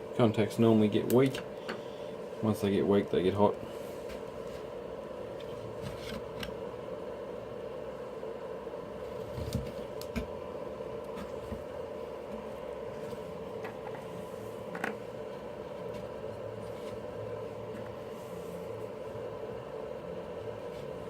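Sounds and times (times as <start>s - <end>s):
steady background hum: 0.0s - 21.0s.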